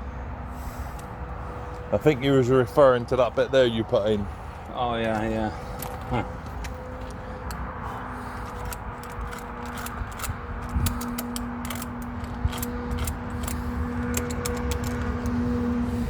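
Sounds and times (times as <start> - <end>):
hand tools clicking and tapping: 8.3 - 15.6.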